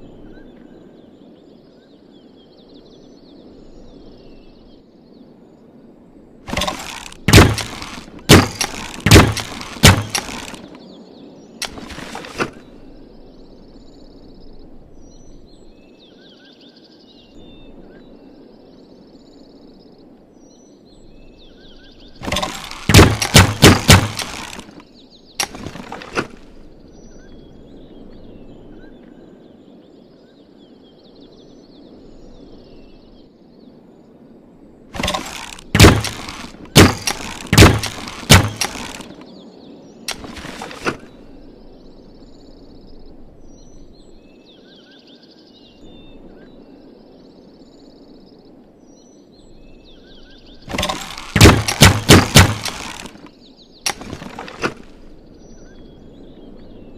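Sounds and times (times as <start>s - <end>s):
faint birds chirping: 0.0s - 56.9s
crossbow shots clacking: 6.5s - 10.7s, 11.6s - 12.6s, 22.2s - 24.8s, 25.4s - 26.5s, 35.0s - 39.2s, 40.1s - 41.0s, 50.7s - 53.3s, 53.9s - 55.0s.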